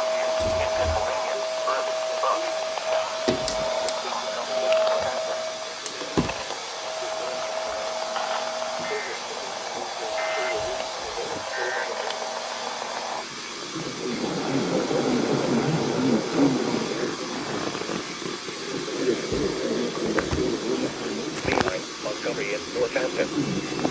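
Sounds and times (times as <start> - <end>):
hum-like tone: 0.0 - 18.1
muffled garbled speech: 0.0 - 23.9
radio static hiss: 0.0 - 23.9.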